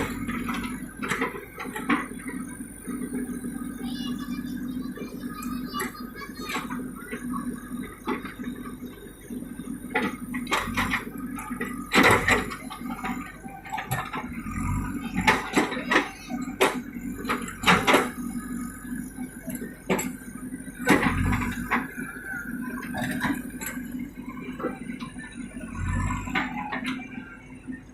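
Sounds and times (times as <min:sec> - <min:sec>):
diesel engine running: 0:00.0 - 0:27.9.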